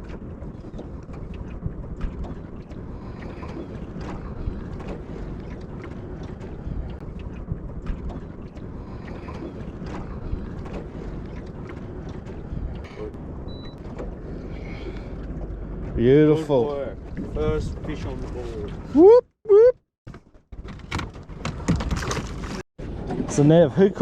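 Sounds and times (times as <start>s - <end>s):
wind buffeting microphone: 0.0s - 19.1s
water lapping against boat hull: 0.0s - 19.2s, 20.1s - 24.0s.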